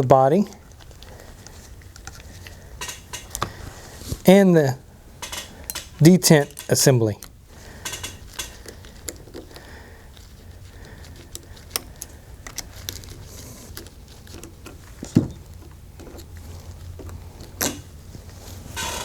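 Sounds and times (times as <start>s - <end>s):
small metal parts clicking and clinking: 2.0s - 3.5s, 5.2s - 9.6s.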